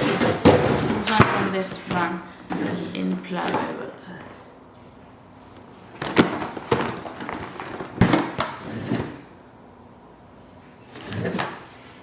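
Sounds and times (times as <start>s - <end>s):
box handling knocks: 0.0s - 2.1s.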